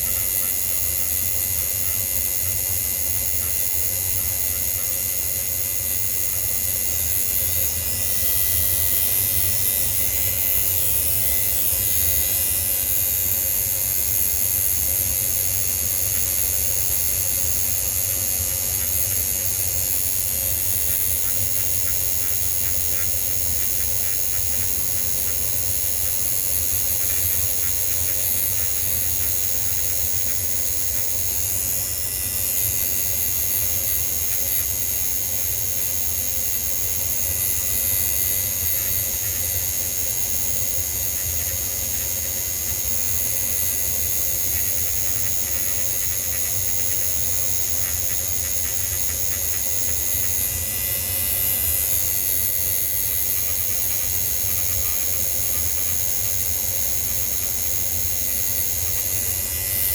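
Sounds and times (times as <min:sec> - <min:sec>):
small motor running: 0:00.0 - 0:59.9.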